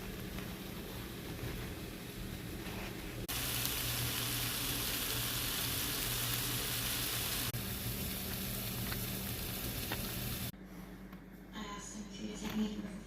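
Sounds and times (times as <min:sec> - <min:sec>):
low steady hum: 0:00.0 - 0:13.0
vegetables sizzling in a pan: 0:03.2 - 0:10.5.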